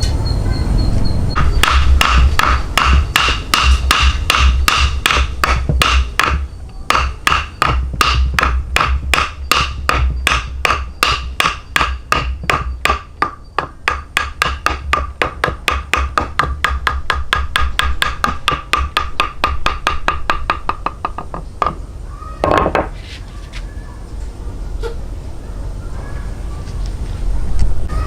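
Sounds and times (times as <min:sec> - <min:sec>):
hammer striking with ring: 0:01.3 - 0:21.8.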